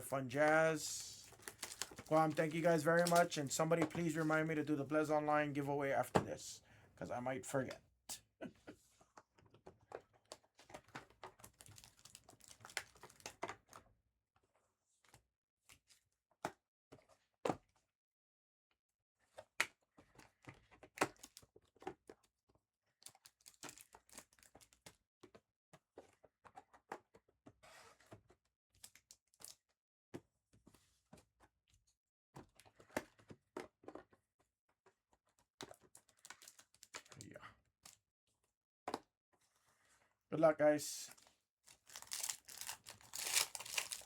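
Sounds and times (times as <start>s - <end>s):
wrappers ripping and crinkling: 0.4s - 4.5s, 11.4s - 13.3s, 36.1s - 37.2s, 41.7s - 44.0s.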